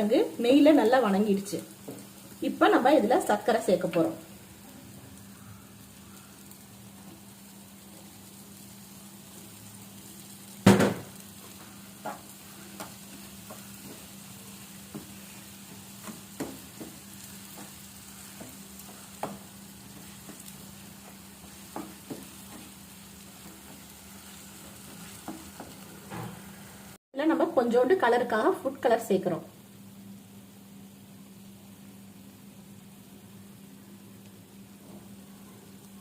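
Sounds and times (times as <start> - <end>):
potato sizzling in a pan: 0.0 - 36.0
loud knock: 10.7 - 11.1
spatula scraping a pan: 12.1 - 26.4.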